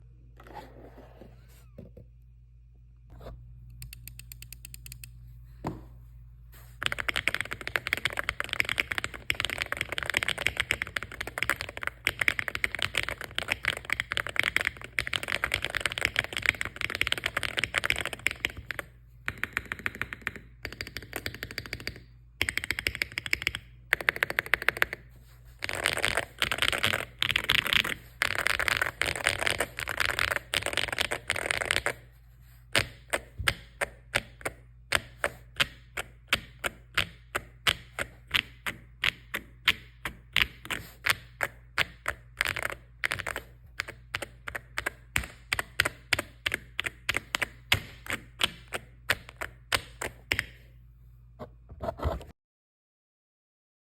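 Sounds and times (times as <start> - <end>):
mechanical keyboard typing: 6.8 - 25.0, 25.6 - 32.0, 32.8 - 50.5.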